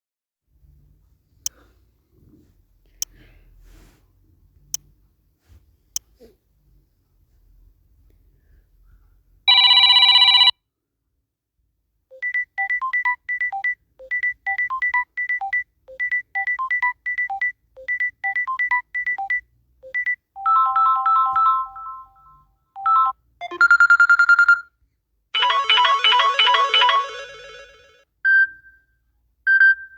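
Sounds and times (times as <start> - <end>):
beeping ringtone melody: 12.3 - 24.6, 25.4 - 28.0.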